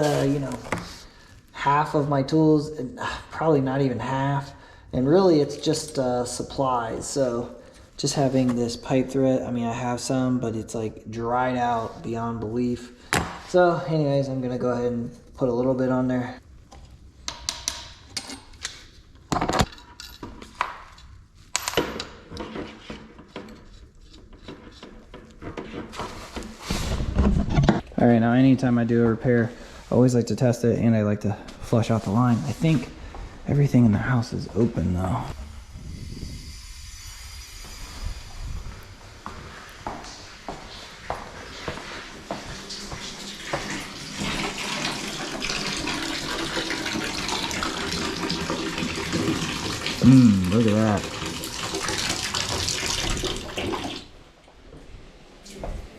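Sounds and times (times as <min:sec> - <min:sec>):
metal tools clinking: 0:05.6 - 0:06.1
tap water running: 0:41.1 - 0:54.1.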